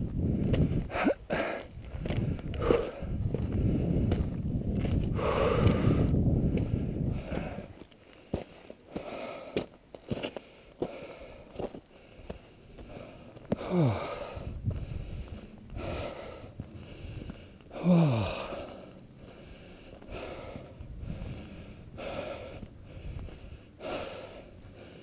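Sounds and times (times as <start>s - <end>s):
person breathing hard: 0.2s - 25.0s
person sighing: 0.9s - 1.6s, 13.5s - 14.5s, 17.7s - 18.8s.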